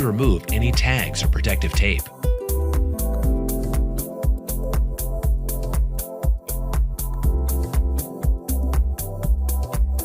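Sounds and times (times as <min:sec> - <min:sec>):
electronic music with steady beat: 0:00.0 - 0:10.0.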